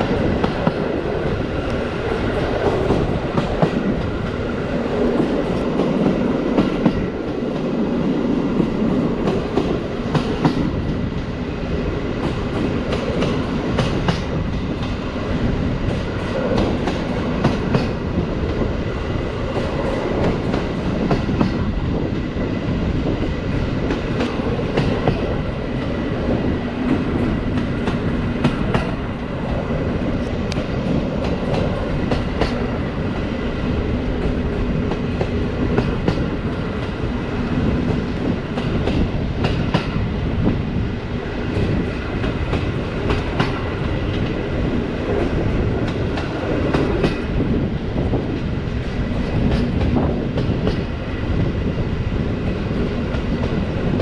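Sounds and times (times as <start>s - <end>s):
train wheels rumbling on rail: 0.0s - 54.0s.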